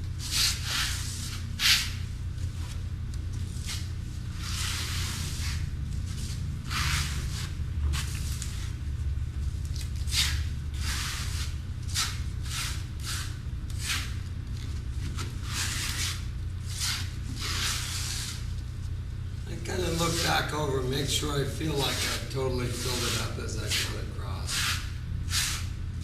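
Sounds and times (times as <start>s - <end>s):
steady low hum: 0.0s - 26.0s
tool scraping wet coating: 19.6s - 20.8s, 21.7s - 25.6s.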